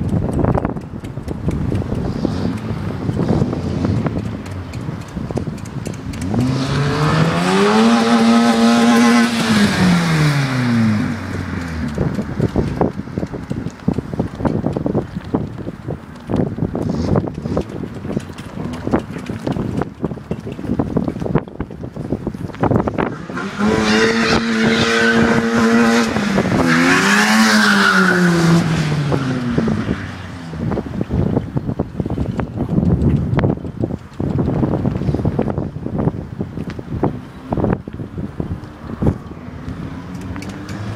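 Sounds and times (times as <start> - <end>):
car engine revving: 0.1 - 13.6, 22.5 - 30.8.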